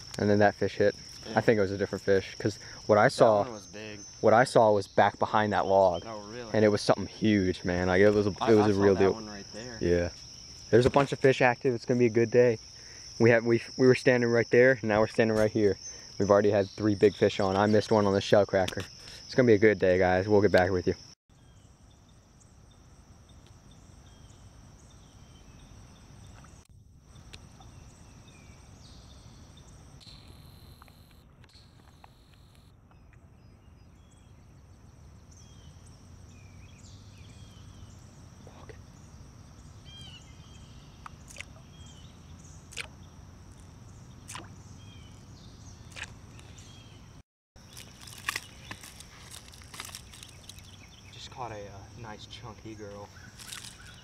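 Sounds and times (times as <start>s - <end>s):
insects chirring: 0.0s - 54.0s
bird chirps: 32.9s - 43.1s, 43.8s - 54.0s.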